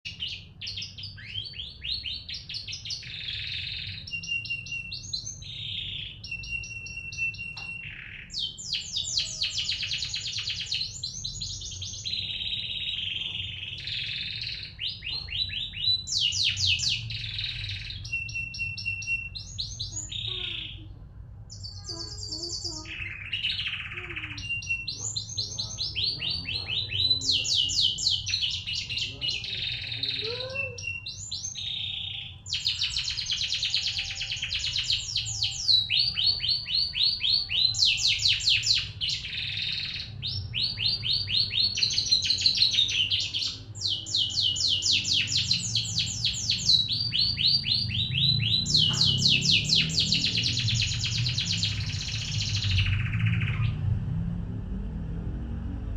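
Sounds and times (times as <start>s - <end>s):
canary singing trills: 0.0s - 53.9s.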